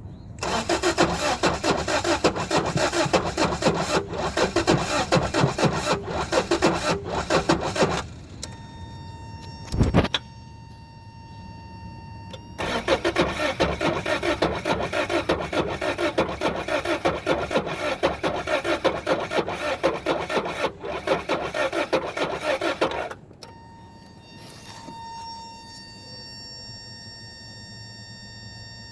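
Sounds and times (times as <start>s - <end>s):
starter motor cranking engine: 0.4s - 8.6s, 12.6s - 23.5s.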